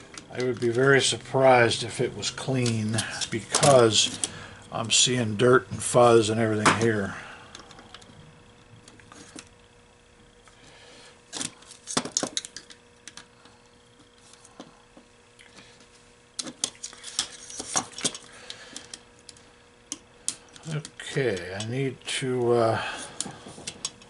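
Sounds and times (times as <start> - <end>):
faint steady hum: 0.0 - 24.0
plastic parts clicking and knocking: 11.3 - 13.3, 16.4 - 21.7.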